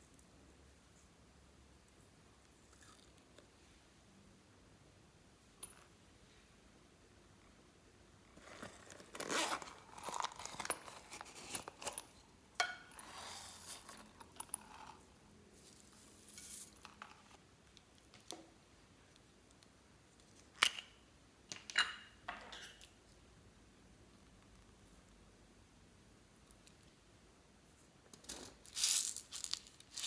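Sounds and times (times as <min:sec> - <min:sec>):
crinkling and scraping: 0:08.3 - 0:17.4, 0:28.1 - 0:30.0.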